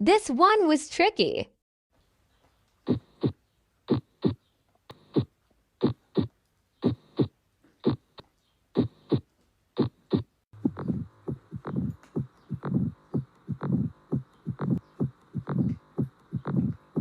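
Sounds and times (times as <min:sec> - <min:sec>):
heartbeat lub-dub: 0:02.9 - 0:08.2, 0:08.8 - 0:09.2, 0:09.8 - 0:17.0
busier heart sound: 0:09.8 - 0:17.0
faint extra heart sounds: 0:09.8 - 0:17.0.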